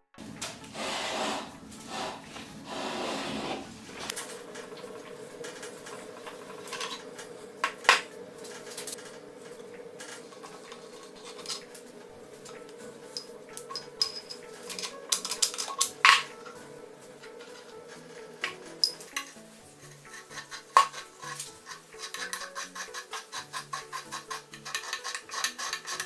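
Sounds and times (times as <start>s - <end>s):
steady hum: 0.2s - 21.9s
metal parts clinking: 13.1s - 16.3s, 18.4s - 19.4s.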